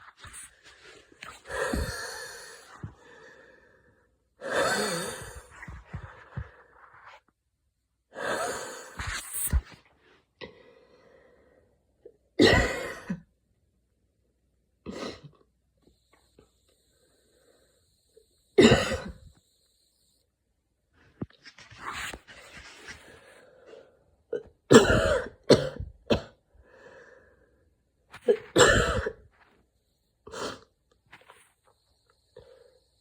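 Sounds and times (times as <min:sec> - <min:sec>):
person wheezing: 0:01.2 - 0:03.6, 0:04.4 - 0:06.4, 0:08.2 - 0:09.6.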